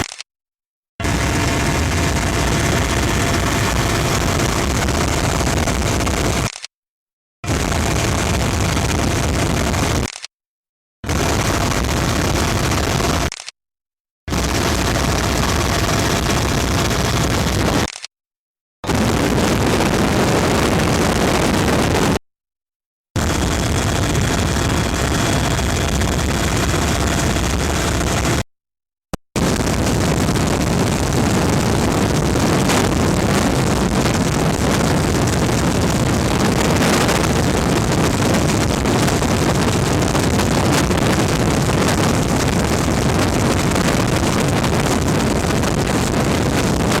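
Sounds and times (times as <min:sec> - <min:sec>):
engine and wind rush: 0:01.0 - 0:06.5, 0:07.5 - 0:10.1, 0:11.1 - 0:13.3, 0:14.3 - 0:17.9, 0:18.9 - 0:22.2, 0:23.2 - 0:28.4, 0:29.4 - 0:47.0.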